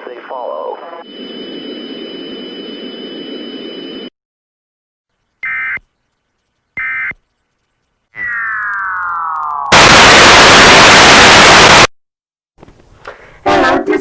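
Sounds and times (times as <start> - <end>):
warbling data bursts: 7.6 - 11.9.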